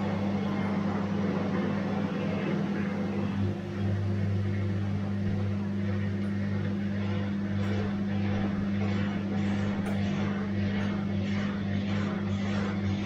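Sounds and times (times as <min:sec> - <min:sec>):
washing machine motor hum: 0:00.0 - 0:13.0
water churning in drum: 0:00.0 - 0:13.0.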